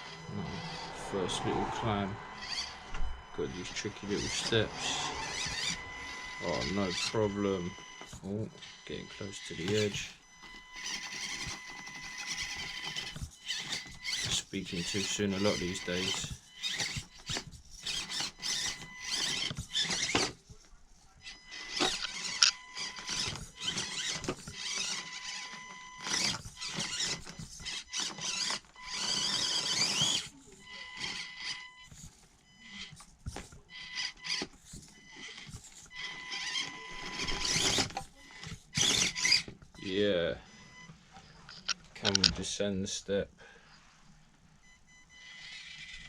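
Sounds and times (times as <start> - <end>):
thin steady high tone: 0.0 - 20.0
small electric motor whining: 0.0 - 43.0, 44.6 - 46.0.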